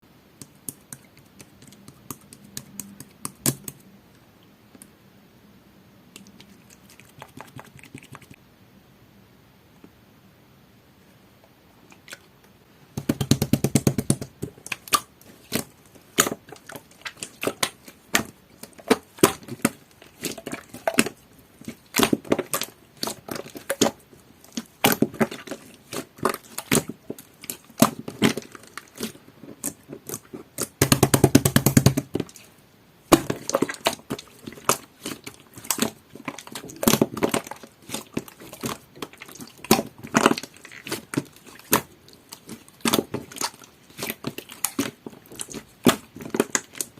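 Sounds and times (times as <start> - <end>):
slime squeezed with wet pops: 6.2 - 8.4, 33.1 - 46.9.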